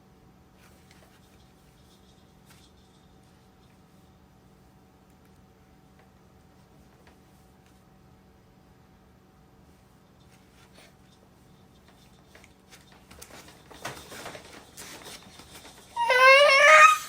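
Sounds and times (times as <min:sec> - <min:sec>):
soft rustling: 0:09.6 - 0:16.0
cat meowing loudly: 0:16.0 - 0:17.0.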